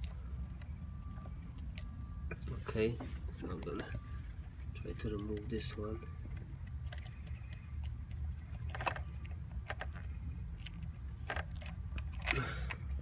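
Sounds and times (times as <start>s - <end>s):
steady low hum: 0.0s - 13.0s
plastic connector clicks and rattles: 8.5s - 13.0s.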